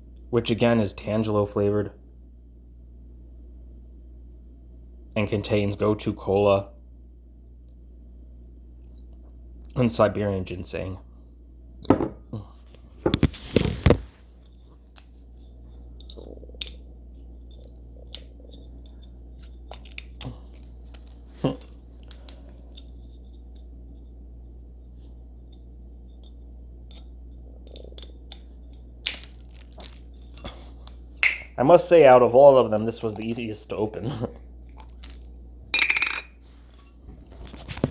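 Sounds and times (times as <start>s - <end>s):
steady low hum: 0.0s - 37.9s
bottle cap clicks and crinkles: 29.0s - 30.5s.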